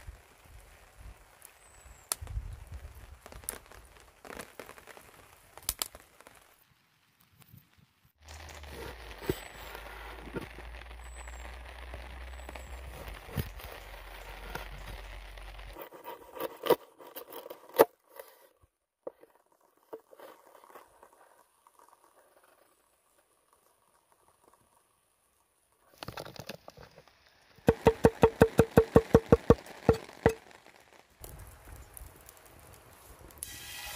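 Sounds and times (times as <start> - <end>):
campfire crackling and popping: 0.0 - 18.4, 19.0 - 33.9
sharp knocks: 27.7 - 30.4.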